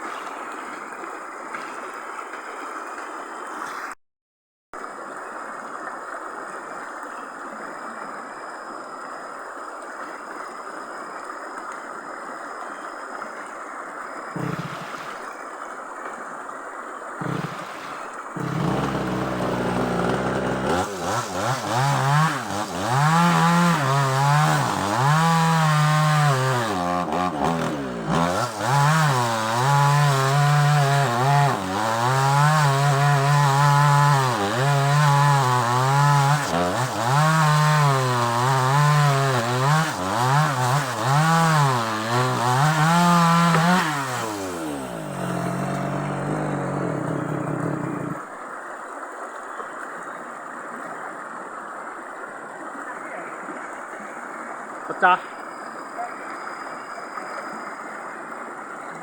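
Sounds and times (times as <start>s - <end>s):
chainsaw revving: 14.4s - 15.2s, 17.2s - 48.3s
short sounds: 43.8s - 48.2s.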